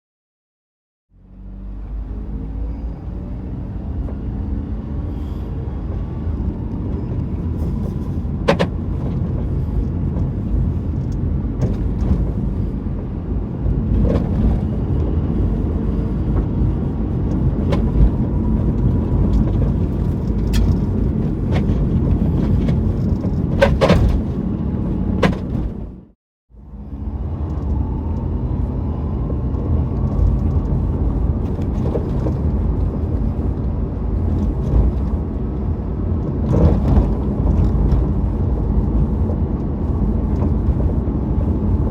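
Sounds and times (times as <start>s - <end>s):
vehicle rumble on road: 1.1s - 41.9s.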